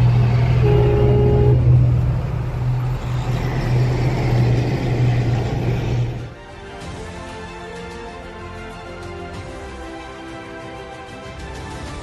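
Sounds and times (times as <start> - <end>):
vehicle engine and road drone: 0.0 - 7.2.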